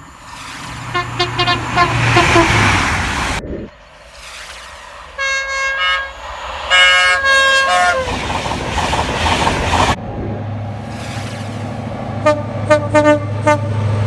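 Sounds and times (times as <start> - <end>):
train passing rushing and rattling: 0.0 - 14.0
train air horn: 0.9 - 2.9, 5.2 - 8.2, 12.2 - 13.9.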